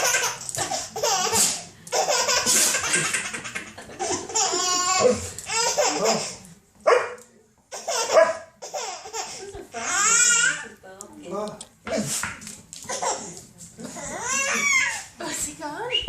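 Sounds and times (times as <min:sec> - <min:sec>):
baby laughing: 0:00.0 - 0:06.4, 0:07.7 - 0:10.6.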